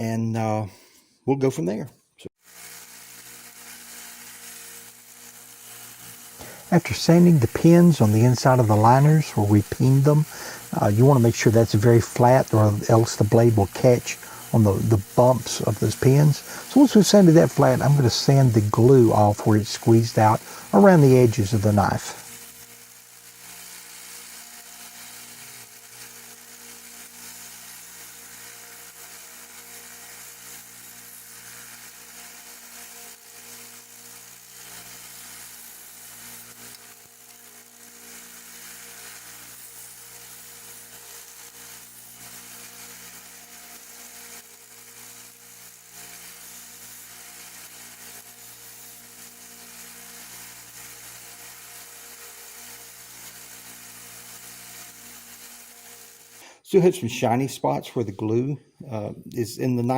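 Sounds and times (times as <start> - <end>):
abrasive sanding hiss: 2.3 - 57.9.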